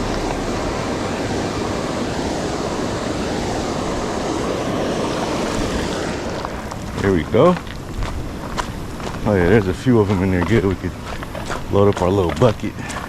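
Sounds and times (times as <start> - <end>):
waterfall and river rushing: 0.0 - 7.4.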